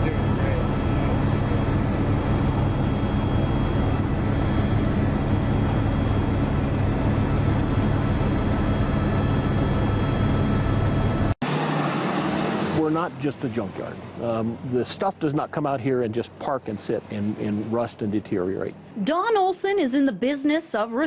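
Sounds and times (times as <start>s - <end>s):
aircraft engine drone: 0.0s - 19.0s.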